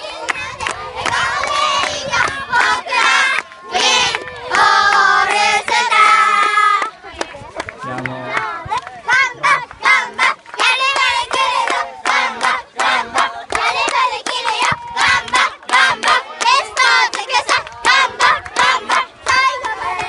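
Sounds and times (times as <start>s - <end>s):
children shouting and chanting: 0.0s - 20.0s.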